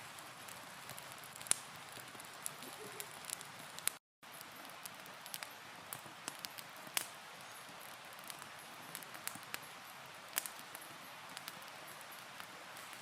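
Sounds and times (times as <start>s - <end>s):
campfire crackling: 0.0s - 13.0s.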